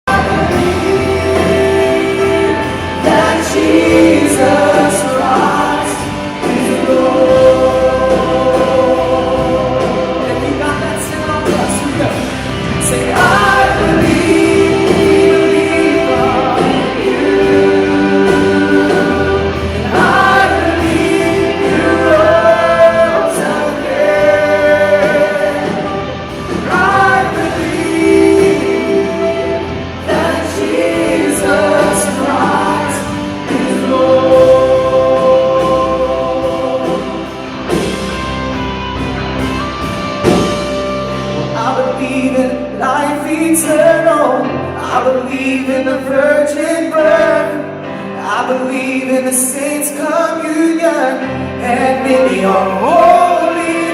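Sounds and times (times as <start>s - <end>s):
steady bass line: 0.0s - 44.0s
accompanying band: 0.0s - 53.9s
group singing worship music: 0.0s - 53.9s.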